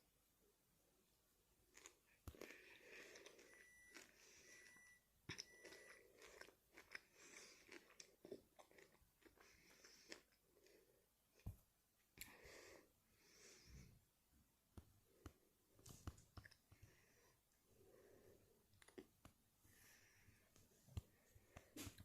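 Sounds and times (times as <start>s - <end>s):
faint crunching and clicking: 1.7s - 12.4s, 14.8s - 17.1s, 18.7s - 22.0s.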